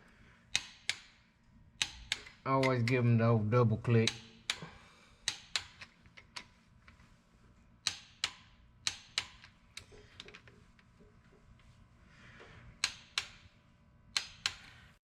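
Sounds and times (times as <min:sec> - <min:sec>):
torque wrench clicking: 0:01.8 - 0:03.0, 0:05.2 - 0:06.5, 0:07.8 - 0:10.5, 0:12.8 - 0:13.5, 0:14.1 - 0:14.9.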